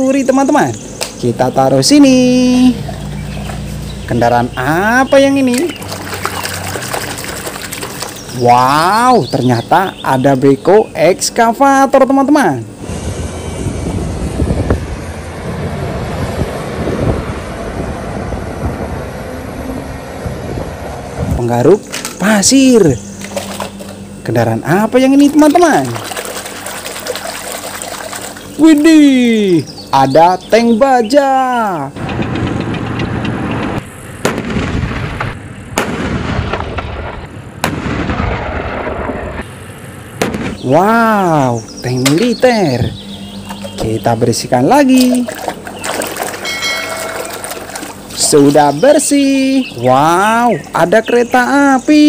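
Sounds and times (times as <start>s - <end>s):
low water spatter: 5.4s - 8.7s, 23.2s - 24.0s, 25.1s - 28.9s, 44.8s - 48.8s
crackling rumble of explosions: 32.0s - 40.7s
sharp gunshots: 34.2s - 39.5s, 40.2s - 40.7s.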